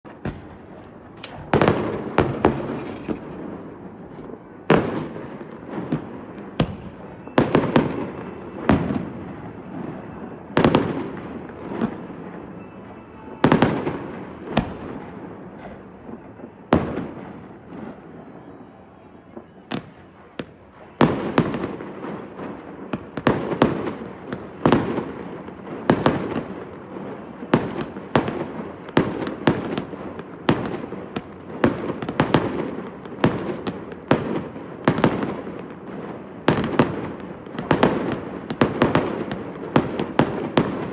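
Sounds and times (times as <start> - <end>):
firework bangs with rumbling echo: 0.2 - 7.0.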